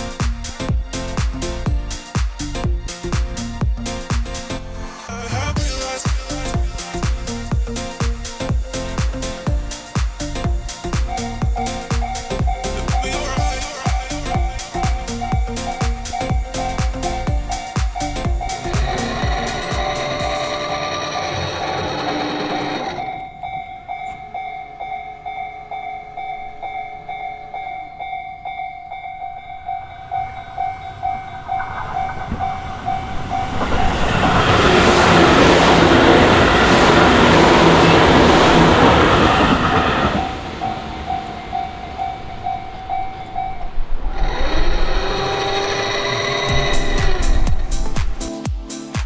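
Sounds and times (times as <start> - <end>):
music: 0.0 - 20.8, 46.5 - 49.0
train wheels rushing on rails: 5.6 - 28.4, 29.4 - 48.2
level crossing warning bell ringing: 11.2 - 33.6, 34.8 - 43.8.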